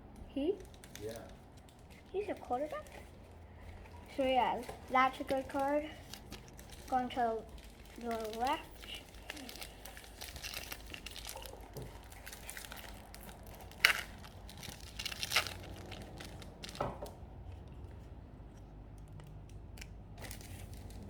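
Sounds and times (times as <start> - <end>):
wrapper tearing and crinkling: 0.6 - 2.1, 5.0 - 17.0, 20.2 - 21.0.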